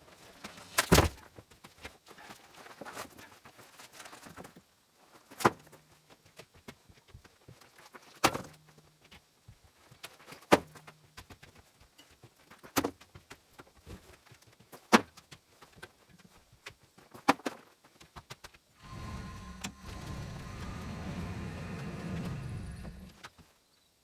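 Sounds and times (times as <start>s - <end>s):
machine running with low rumble: 18.8s - 23.2s.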